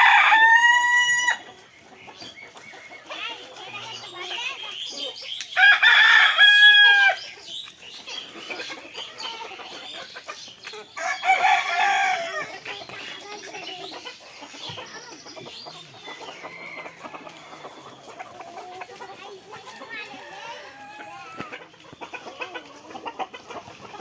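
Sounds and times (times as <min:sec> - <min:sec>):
rooster crowing: 0:00.0 - 0:01.4, 0:05.6 - 0:07.2, 0:11.0 - 0:12.4
chickens clucking: 0:00.0 - 0:24.0.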